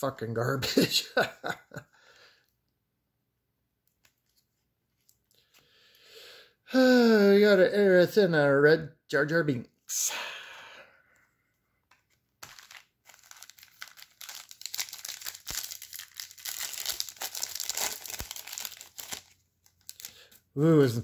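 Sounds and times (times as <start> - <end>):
card pack wrapper crinkling and tearing: 11.9 - 20.5.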